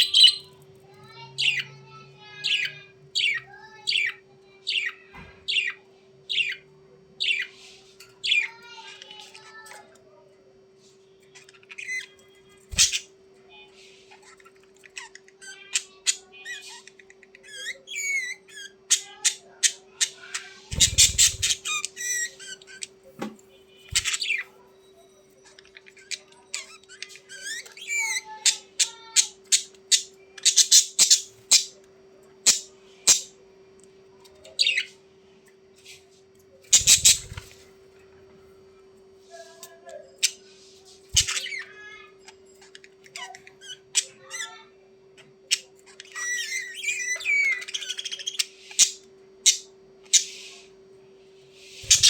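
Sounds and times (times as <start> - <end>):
budgerigars chattering and warbling: 0.0 - 0.6, 1.4 - 7.5, 11.4 - 13.2, 14.2 - 23.0, 23.8 - 24.5, 25.4 - 31.8, 32.4 - 33.4, 36.7 - 37.7, 41.2 - 41.7, 45.5 - 50.6, 51.6 - 52.0.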